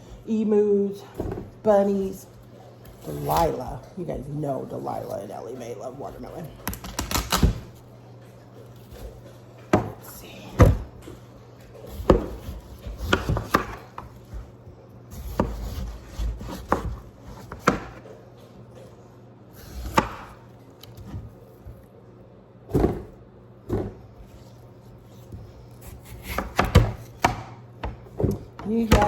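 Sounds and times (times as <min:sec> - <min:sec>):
knife chopping watermelon: 0:02.8 - 0:03.9, 0:08.8 - 0:18.2, 0:19.5 - 0:21.9, 0:22.7 - 0:29.0.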